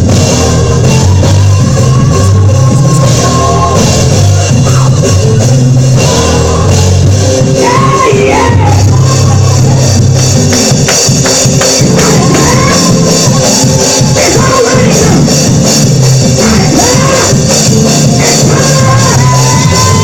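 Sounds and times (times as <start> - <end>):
drums and tambourine beat: 0.0 - 20.0
up-tempo church praise music: 0.0 - 20.0.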